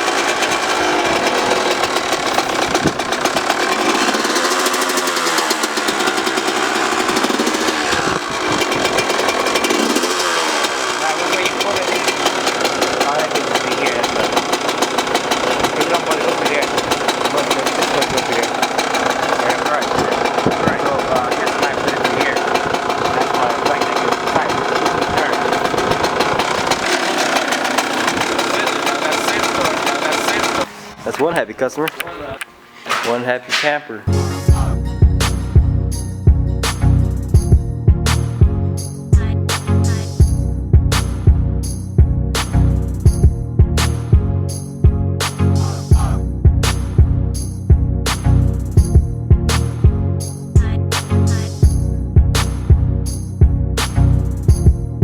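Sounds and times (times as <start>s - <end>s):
small engine revving: 0.0s - 30.7s, 34.1s - 44.6s, 45.2s - 54.9s.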